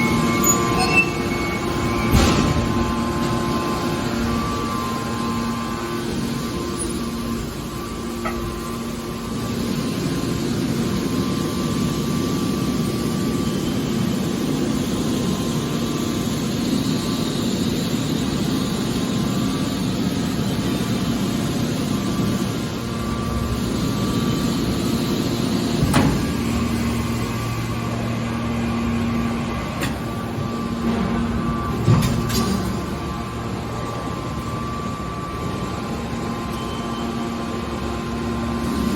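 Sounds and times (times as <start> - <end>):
industrial machinery humming: 0.0 - 38.9.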